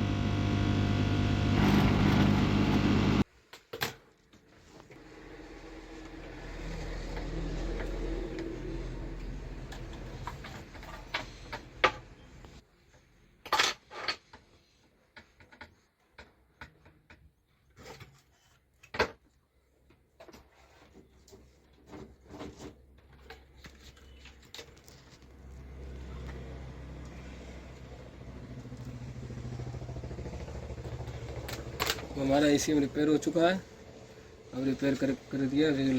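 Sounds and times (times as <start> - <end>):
low steady hum: 0.0 - 3.2.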